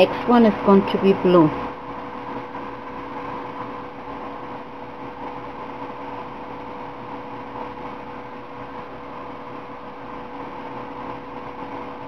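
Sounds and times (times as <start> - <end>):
background hum and hiss: 0.0 - 12.0
faint constant tone: 0.0 - 12.0.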